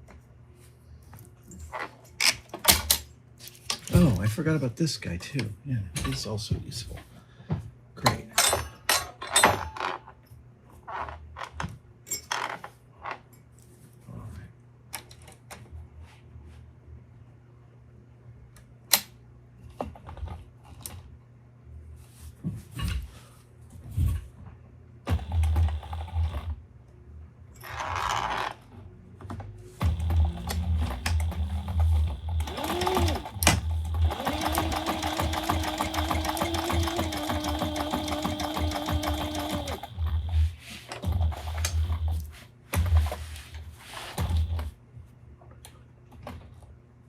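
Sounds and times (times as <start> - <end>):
sewing machine stitching: 25.1 - 26.6, 29.8 - 43.2, 43.8 - 44.7.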